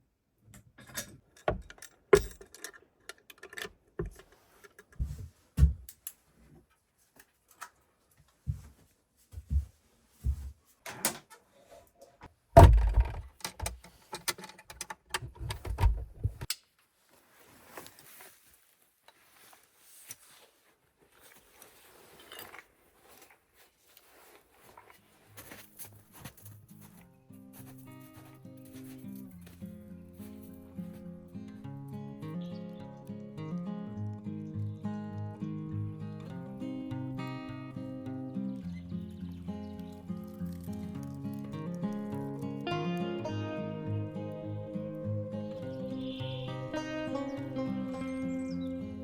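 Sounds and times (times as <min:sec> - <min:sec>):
knocks clunks and clicks: 0:12.6 - 0:16.6
faint rustling: 0:15.6 - 0:31.4.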